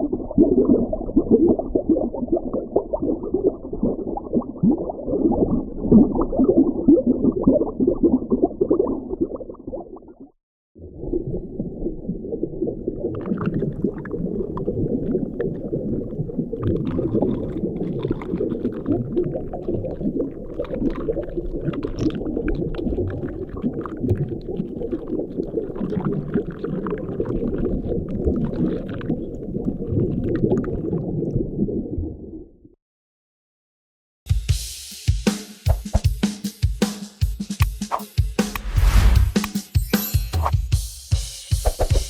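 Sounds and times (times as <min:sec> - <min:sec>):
underwater pops and gurgles: 0:00.0 - 0:32.5.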